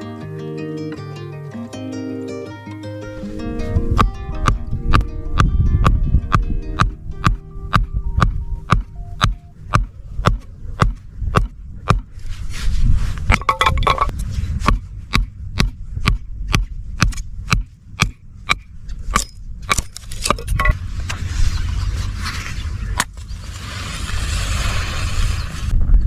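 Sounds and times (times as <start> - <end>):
low rumble: 3.2 - 26.0
sharp knocks or crunches: 6.8 - 12.2.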